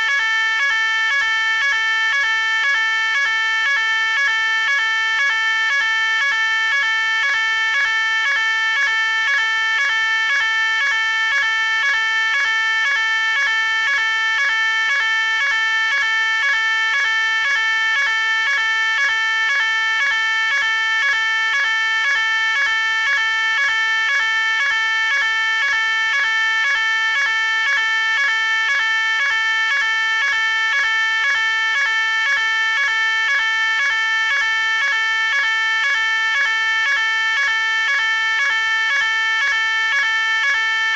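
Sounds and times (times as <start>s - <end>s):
pulsing fire alarm tone: 0.0s - 40.9s.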